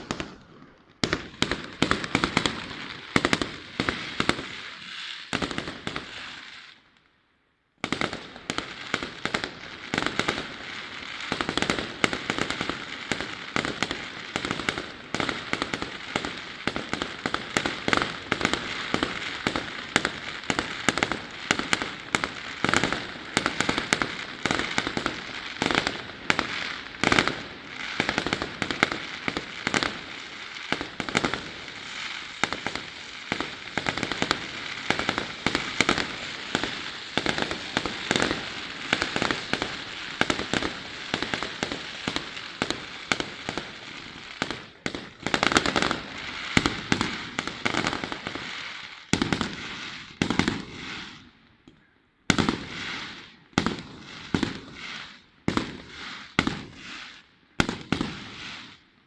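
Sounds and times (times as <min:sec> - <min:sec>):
fireworks bangs and crackling: 0:00.0 - 0:59.0.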